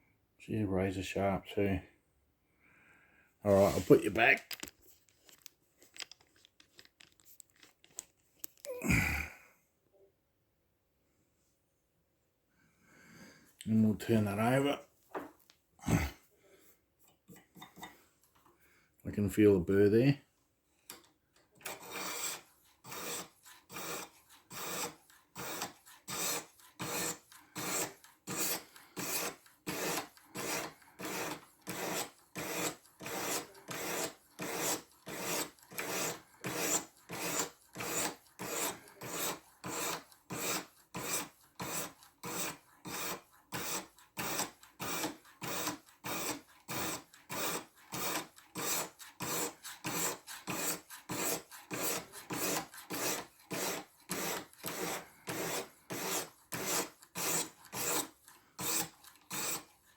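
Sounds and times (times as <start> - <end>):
sharpening stone scraping knife edge: 21.7 - 59.7.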